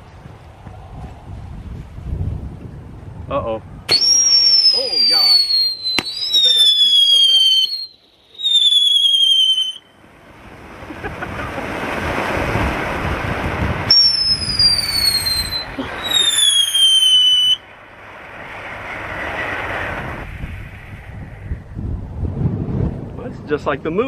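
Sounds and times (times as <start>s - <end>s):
firework fountain hissing: 3.9s - 9.8s, 10.4s - 21.2s
firework whistles falling in pitch: 3.9s - 9.9s, 13.9s - 17.6s.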